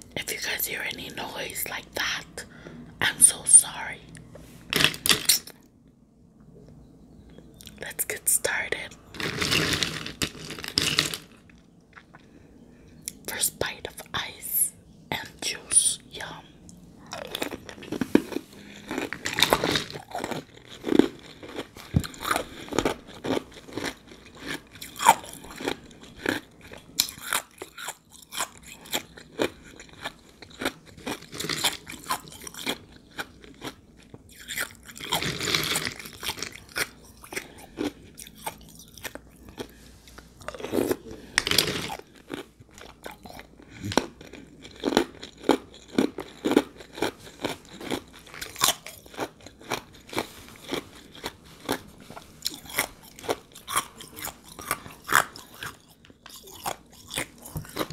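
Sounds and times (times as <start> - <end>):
chewing crunchy ice: 9.1 - 12.3, 17.0 - 57.9.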